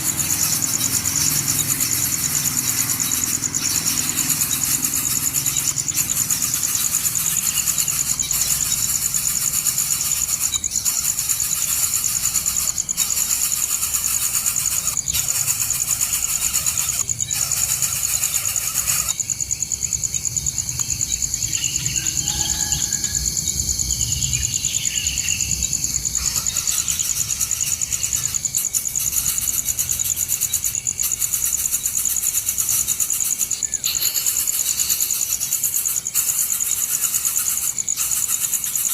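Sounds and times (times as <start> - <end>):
insects droning: 0.0 - 38.9.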